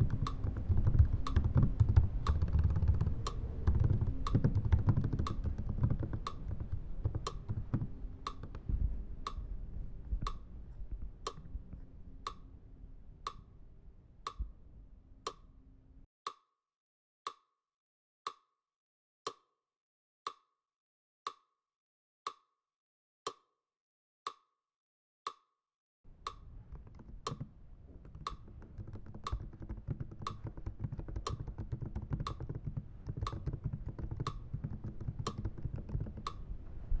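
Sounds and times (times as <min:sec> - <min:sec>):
typing on computer keyboard: 0:00.0 - 0:08.5, 0:26.3 - 0:36.4.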